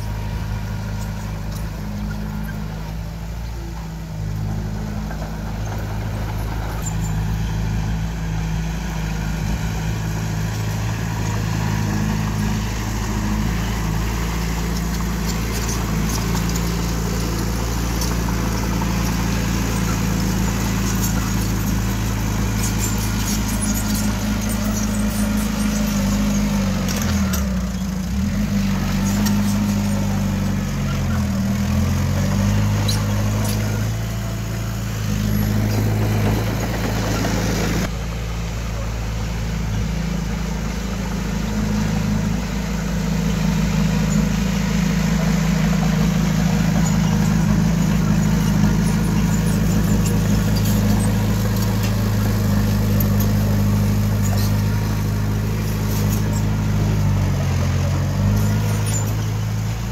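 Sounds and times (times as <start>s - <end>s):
heavy diesel engine running: 0.0s - 59.9s.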